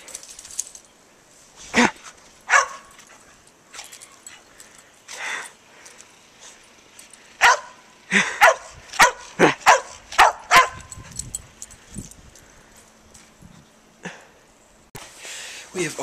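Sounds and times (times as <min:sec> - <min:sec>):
dog barking: 0:02.5 - 0:02.9, 0:07.4 - 0:07.8, 0:08.4 - 0:11.0.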